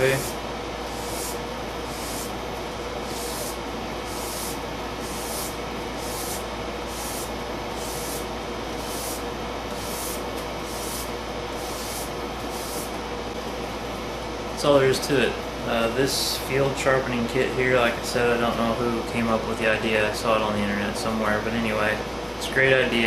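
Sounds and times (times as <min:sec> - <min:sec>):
blade rasping on sandpaper: 0:00.0 - 0:02.4, 0:03.0 - 0:12.9
steady hum: 0:00.0 - 0:23.0.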